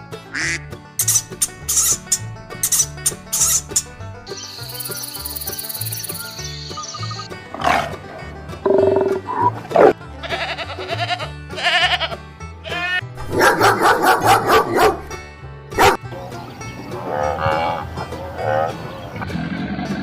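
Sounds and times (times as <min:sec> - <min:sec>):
background music: 0:00.0 - 0:20.0
bleat-like animal calls: 0:10.2 - 0:13.0.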